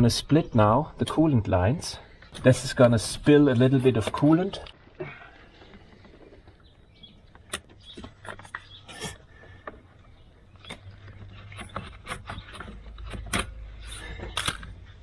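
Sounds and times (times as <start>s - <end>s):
hand tool clicks and knocks: 10.6s - 14.8s.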